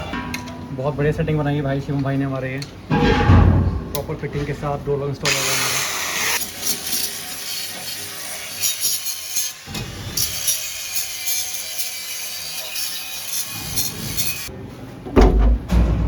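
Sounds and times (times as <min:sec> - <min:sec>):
tool scraping metal: 0:06.2 - 0:14.5.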